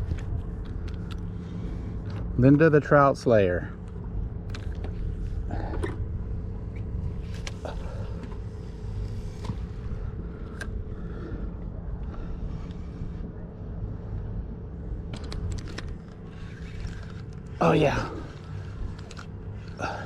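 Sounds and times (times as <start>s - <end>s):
motor humming: 14.6s - 20.0s.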